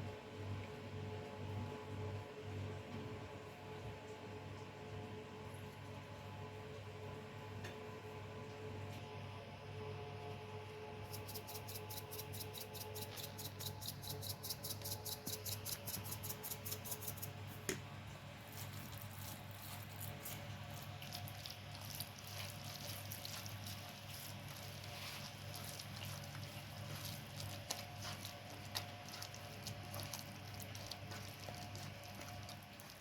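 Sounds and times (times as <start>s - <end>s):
wet squishing of raw food: 18.4s - 33.0s.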